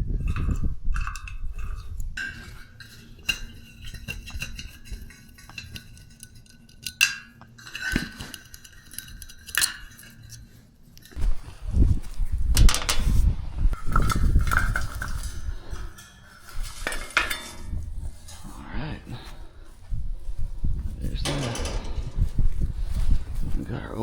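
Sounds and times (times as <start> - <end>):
low rumble: 20.0 - 23.7
light metallic clinks and taps: 21.2 - 23.2.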